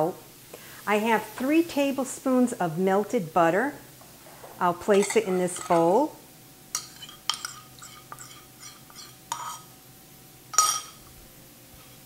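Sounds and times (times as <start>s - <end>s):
kitchenware clinking against bowl: 4.9s - 6.0s, 6.8s - 9.7s, 10.6s - 11.1s.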